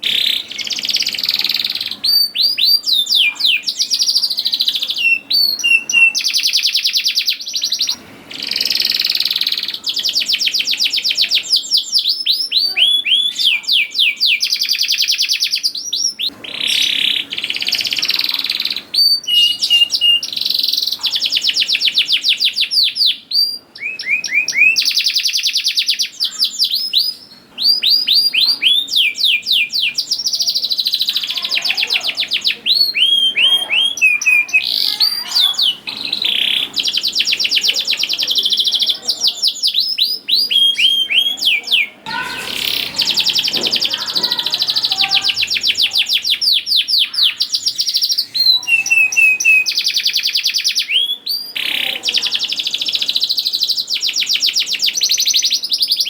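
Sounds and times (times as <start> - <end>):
canary singing trills: 0.0 - 56.0.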